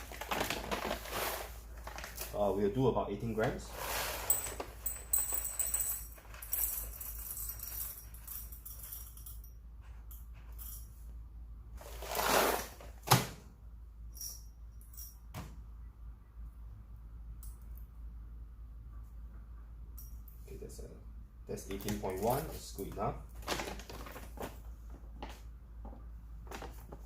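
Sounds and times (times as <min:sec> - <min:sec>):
coffee beans rattling: 0:03.7 - 0:09.2.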